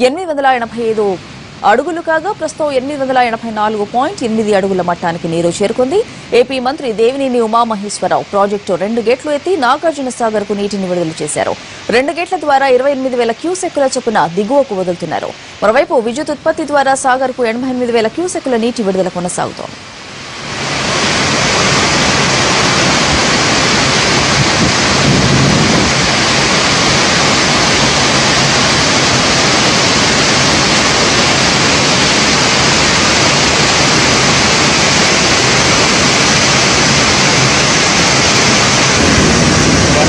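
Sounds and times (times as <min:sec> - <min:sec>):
roar of falling water: 0:19.7 - 0:40.0.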